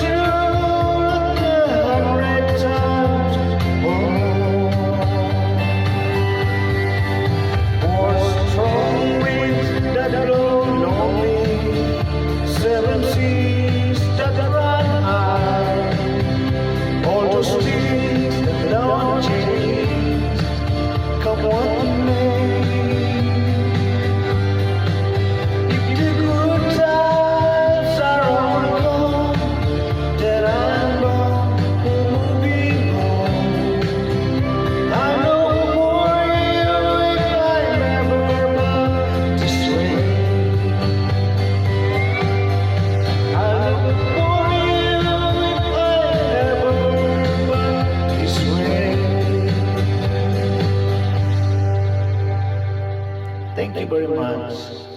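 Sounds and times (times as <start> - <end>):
person singing: 0.0 - 51.2
bass: 0.0 - 54.9
guitar chords: 0.0 - 54.9
sliding lead melody: 0.0 - 54.9.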